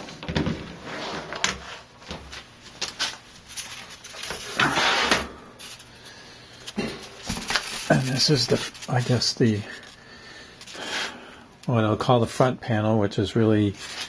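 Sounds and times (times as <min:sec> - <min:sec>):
panel sliding scrape: 0:04.4 - 0:05.3.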